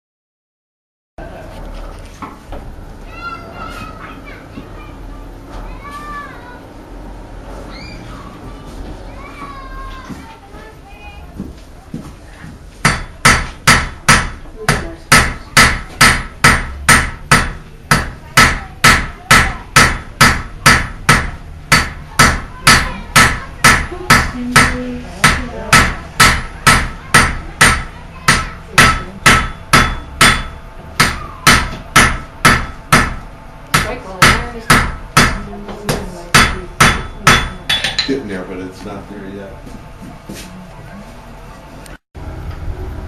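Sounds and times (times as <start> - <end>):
hammer striking iron on anvil: 12.8 - 38.2.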